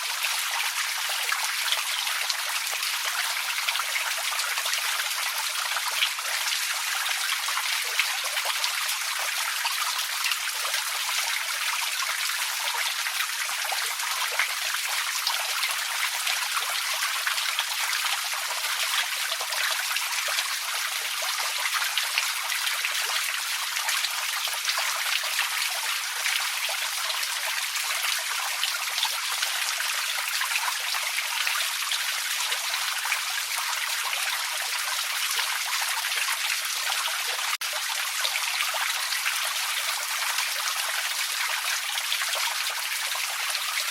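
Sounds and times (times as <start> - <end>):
creek trickling and babbling: 0.0 - 43.9.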